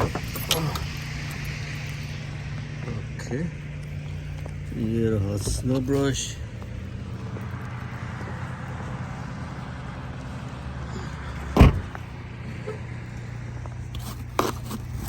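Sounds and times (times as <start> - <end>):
car engine idling: 0.0 - 15.0
loud thump: 11.6 - 12.0.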